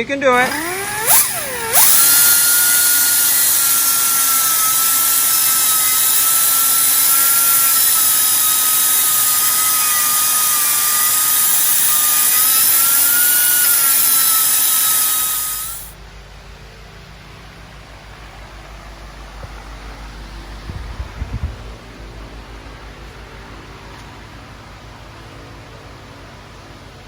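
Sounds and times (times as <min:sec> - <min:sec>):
grinder grinding metal: 0:00.0 - 0:16.0.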